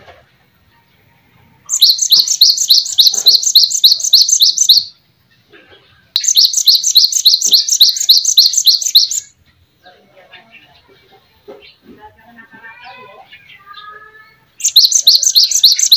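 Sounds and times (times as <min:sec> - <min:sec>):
songbird high chirps: 0:01.7 - 0:05.0, 0:06.2 - 0:11.0, 0:12.8 - 0:15.9.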